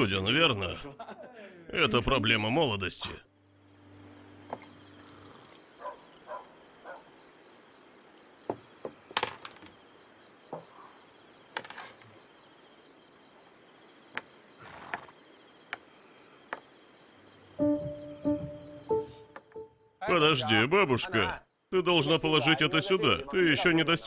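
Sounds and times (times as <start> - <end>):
crickets chirping: 0.0 - 24.0.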